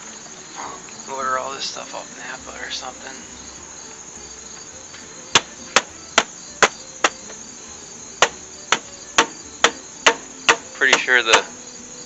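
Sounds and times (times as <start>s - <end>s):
crickets chirping: 0.0s - 12.0s
sharp knocks: 5.3s - 7.4s, 8.2s - 11.5s.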